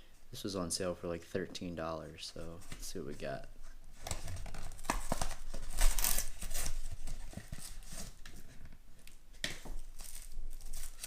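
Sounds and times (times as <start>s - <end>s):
packaging rustling and tearing: 4.0s - 8.5s, 9.7s - 11.0s.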